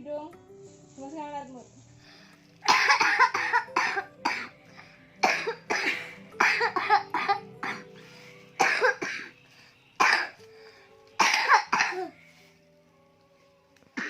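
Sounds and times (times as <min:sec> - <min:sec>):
person coughing: 0:02.6 - 0:04.5, 0:05.2 - 0:07.9, 0:08.6 - 0:09.3, 0:10.0 - 0:10.4, 0:11.2 - 0:12.1.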